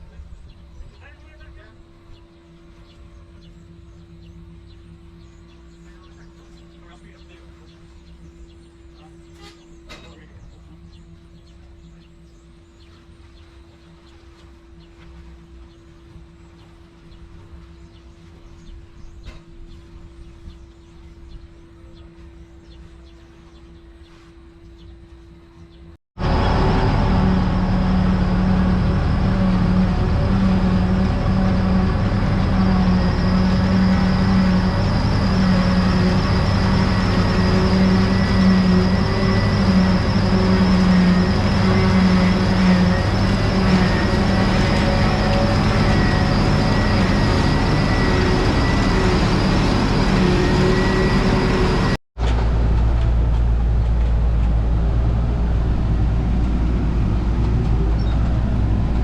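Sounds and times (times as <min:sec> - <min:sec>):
tractor engine running: 0:26.2 - 0:59.0.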